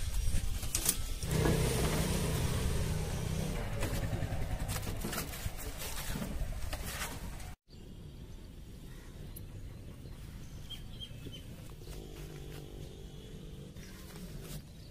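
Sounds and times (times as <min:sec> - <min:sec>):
small motorbike engine running: 0:01.2 - 0:06.1.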